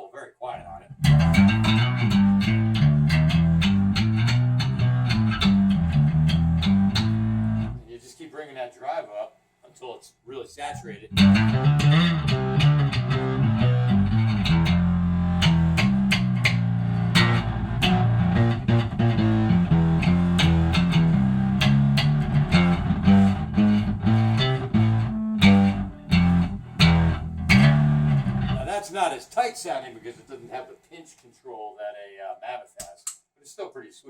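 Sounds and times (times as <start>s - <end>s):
distorted fuzzy bass riff: 0.8s - 7.9s, 11.0s - 28.8s.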